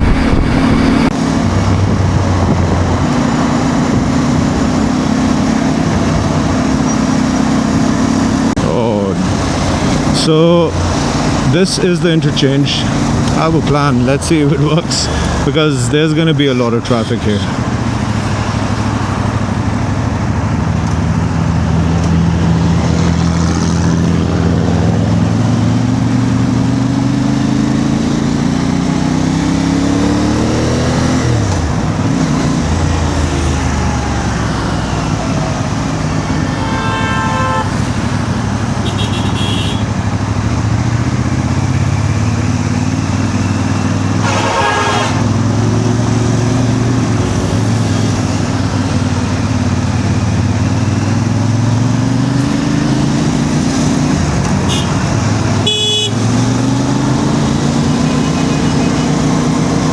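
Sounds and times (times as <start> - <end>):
motorcycle engine accelerating: 0.0 - 59.9
vehicle horns honking: 35.7 - 40.2, 43.8 - 45.7, 54.6 - 56.5, 58.0 - 59.3.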